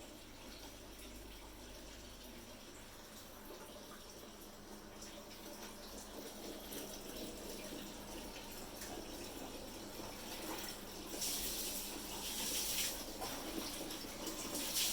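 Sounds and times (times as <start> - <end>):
water running and splashing: 10.1 - 14.9.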